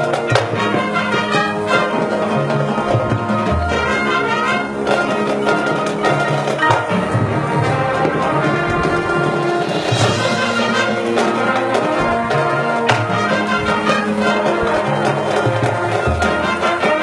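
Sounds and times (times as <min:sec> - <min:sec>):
marching band playing: 0:00.0 - 0:17.0
cymbal crash: 0:07.8 - 0:14.2.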